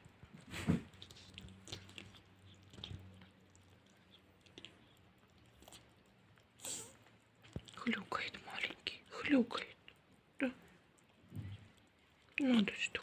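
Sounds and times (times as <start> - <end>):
kitten grunting and snuffling: 0.4 - 3.0, 6.6 - 7.0
wet clicks and snorts: 0.4 - 13.0.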